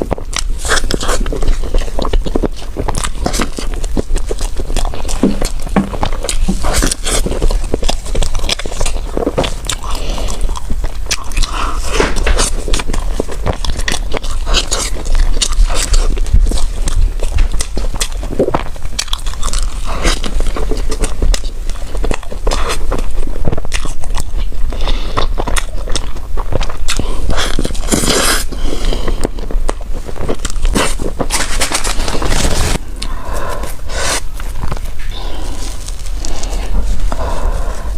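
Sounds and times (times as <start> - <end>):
crunchy chewing of food: 0.0 - 37.9.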